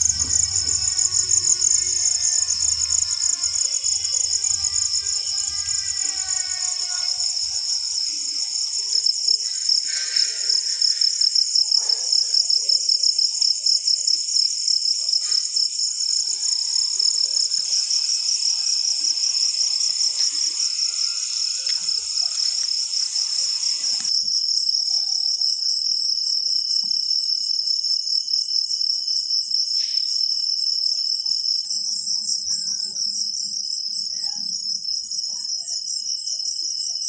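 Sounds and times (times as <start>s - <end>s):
crickets chirping: 0.0s - 37.0s
background hiss: 14.5s - 24.1s.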